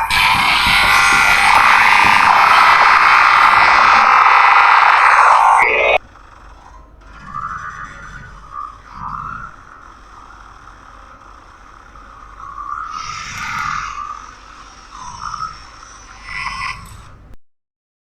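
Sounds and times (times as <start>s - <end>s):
distorted electronic music: 0.0s - 6.0s, 12.5s - 14.3s.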